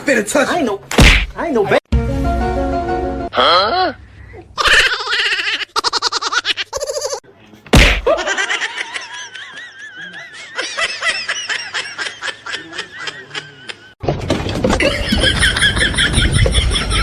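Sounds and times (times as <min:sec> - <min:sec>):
music: 0:01.9 - 0:03.3
wavering pulsing laughter: 0:04.6 - 0:07.2, 0:08.1 - 0:14.0, 0:14.8 - 0:17.0.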